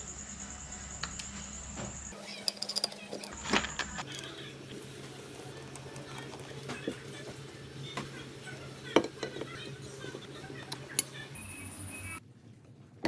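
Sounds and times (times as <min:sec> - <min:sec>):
low workshop hum: 0:01.2 - 0:13.0.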